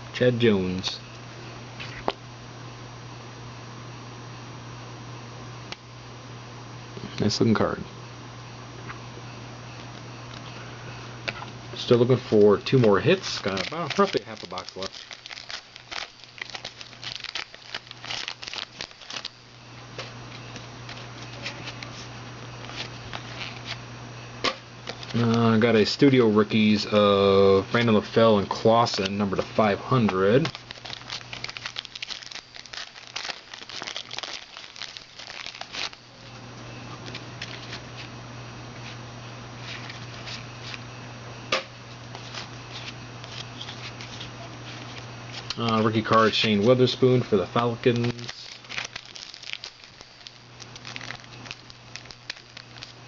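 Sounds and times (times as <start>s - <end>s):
steady low hum: 0.0s - 53.0s
foil wrappers crinkling and tearing: 11.8s - 23.8s, 24.8s - 26.8s, 27.7s - 36.2s, 37.0s - 38.1s, 42.1s - 53.0s
cards clicking and rustling: 12.2s - 19.4s, 24.8s - 25.6s, 28.8s - 36.0s, 42.1s - 53.0s.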